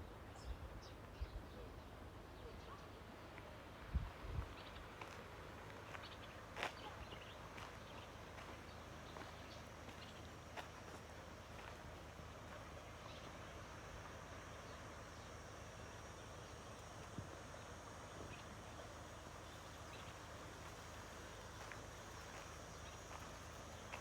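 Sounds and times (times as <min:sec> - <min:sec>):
river water running: 0:00.0 - 0:24.0.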